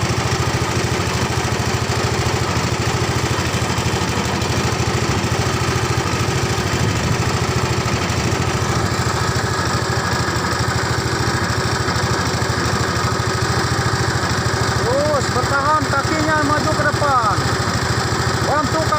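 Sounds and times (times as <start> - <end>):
small engine running: 0.0 - 18.9.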